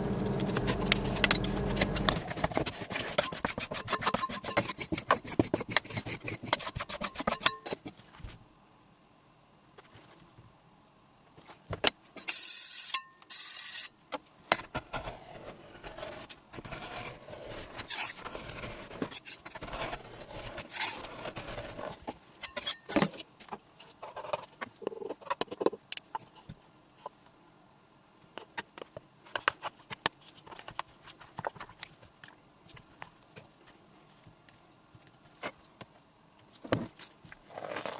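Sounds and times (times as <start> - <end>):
metal spatulas on steel pan: 1.3 - 7.7.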